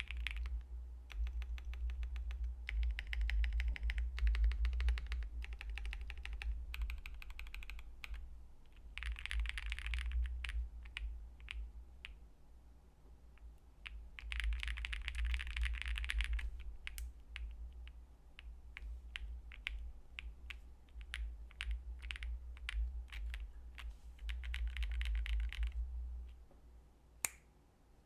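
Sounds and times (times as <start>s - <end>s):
mechanical keyboard typing: 0.0s - 8.2s, 8.8s - 12.1s, 13.8s - 17.6s, 19.1s - 25.8s.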